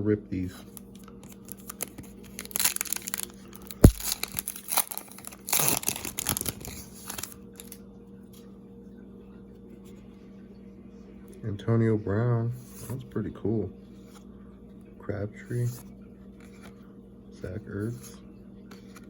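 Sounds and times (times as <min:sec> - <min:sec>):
plastic wrapper tearing and crinkling: 0:00.7 - 0:07.8.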